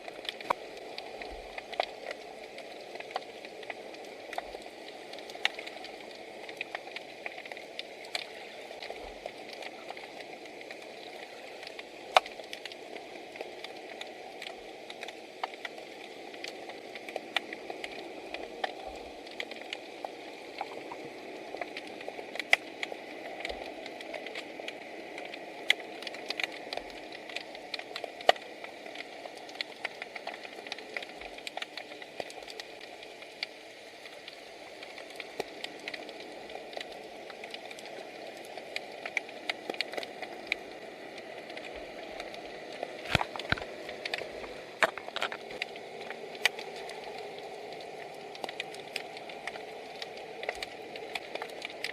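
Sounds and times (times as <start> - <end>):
muffled underwater hiss: 0.0 - 51.9
sharp underwater clicks: 0.2 - 51.9.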